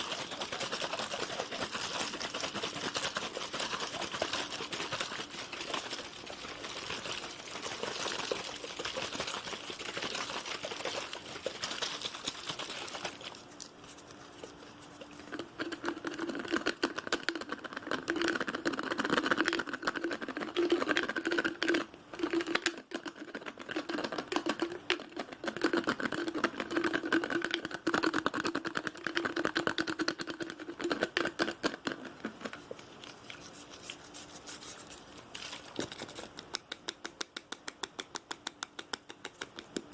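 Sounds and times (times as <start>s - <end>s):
fast fingertip tapping: 36.4s - 39.9s.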